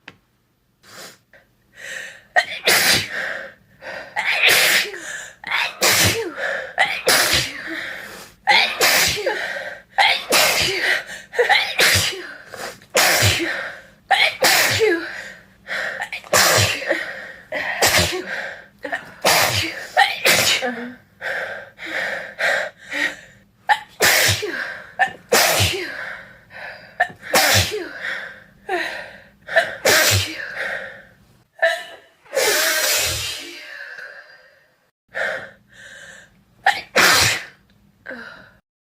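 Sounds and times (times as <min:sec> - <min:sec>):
person sneezing: 0:02.4 - 0:03.2, 0:04.2 - 0:07.8, 0:08.5 - 0:09.4, 0:10.0 - 0:15.0, 0:16.1 - 0:20.9, 0:23.7 - 0:26.0, 0:27.0 - 0:27.9, 0:29.6 - 0:30.5, 0:32.3 - 0:33.7, 0:36.7 - 0:37.6.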